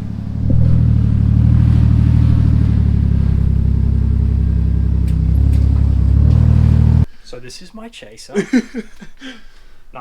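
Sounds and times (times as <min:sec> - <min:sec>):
car engine idling: 0:00.0 - 0:07.1.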